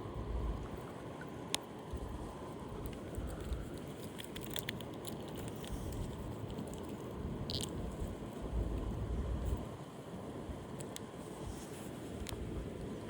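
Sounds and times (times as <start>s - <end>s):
small clicks and ticks: 2.8s - 8.1s, 10.8s - 11.1s.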